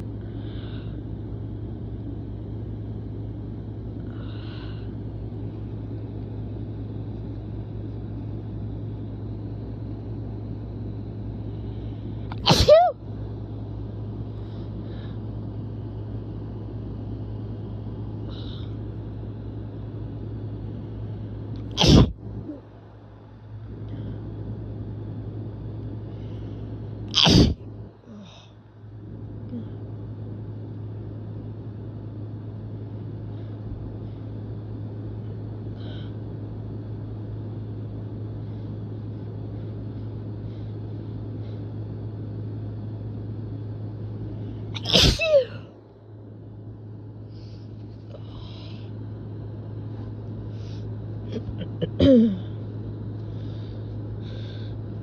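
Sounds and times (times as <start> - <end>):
steady low hum: 0.0 - 55.0
person sneezing: 12.3 - 13.0, 21.7 - 22.2, 27.1 - 27.6, 44.8 - 45.7, 51.4 - 52.5.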